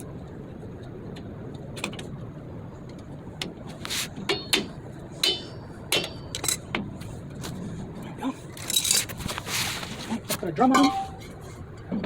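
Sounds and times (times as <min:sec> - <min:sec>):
metal tools clinking and knocking: 0:10.6 - 0:11.4.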